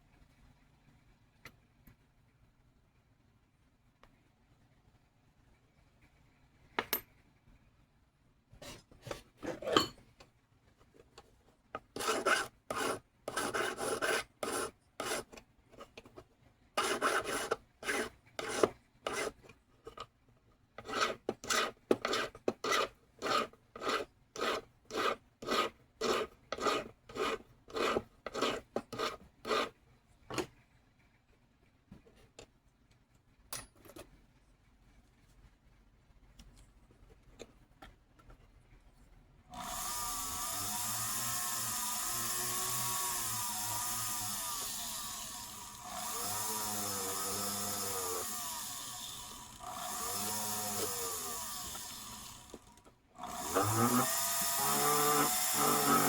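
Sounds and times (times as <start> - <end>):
hand file rasping on metal: 11.8 - 15.4, 16.8 - 19.5, 20.8 - 29.8, 53.2 - 56.0.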